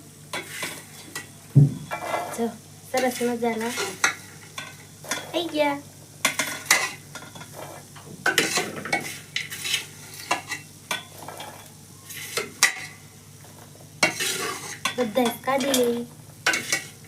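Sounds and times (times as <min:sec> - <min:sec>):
scraping against metal pot: 0:01.8 - 0:05.4, 0:06.3 - 0:12.9, 0:14.0 - 0:15.0, 0:16.4 - 0:17.0.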